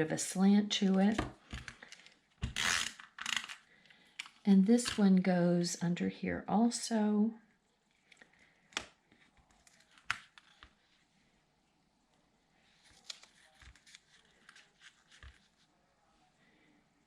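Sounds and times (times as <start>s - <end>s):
paper rustling: 9.1s - 11.0s, 12.7s - 15.7s.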